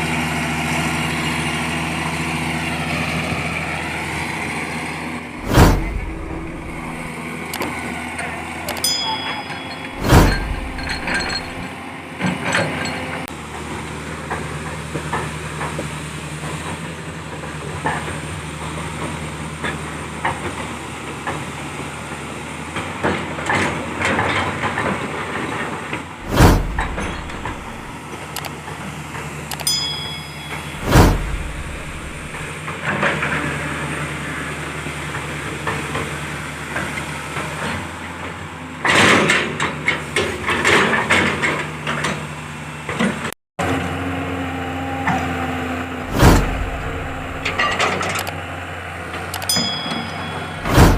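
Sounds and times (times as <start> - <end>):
heavy clunks: 5.4 - 7.1, 9.3 - 11.7, 26.2 - 28.0, 30.1 - 32.5, 46.1 - 48.0
metallic clatter and knocks: 8.7 - 11.7, 26.2 - 28.0, 29.6 - 32.5, 46.1 - 48.3.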